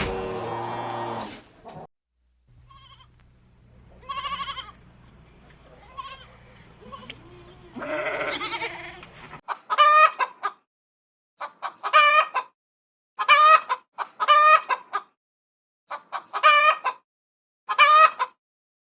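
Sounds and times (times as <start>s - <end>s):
animal bleating: 2.6s - 3.2s, 4.0s - 4.8s, 5.7s - 9.2s
chicken calling: 2.6s - 3.2s, 3.9s - 10.6s, 11.4s - 12.5s, 13.2s - 15.1s, 15.9s - 17.0s, 17.7s - 18.4s.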